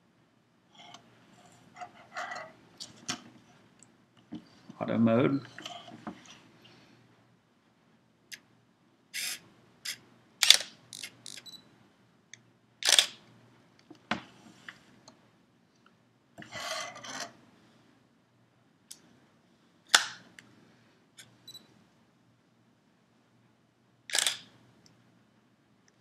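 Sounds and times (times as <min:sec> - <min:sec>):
small camera clicks: 0:10.4 - 0:11.4, 0:12.8 - 0:13.2, 0:24.1 - 0:24.5
camera shutter and mirror firing: 0:24.1 - 0:24.5.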